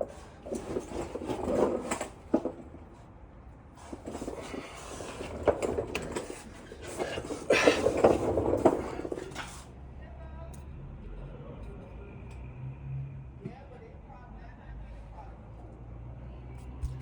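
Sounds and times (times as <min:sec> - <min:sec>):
handling knocks and rattles: 0:00.0 - 0:03.1, 0:03.8 - 0:09.7.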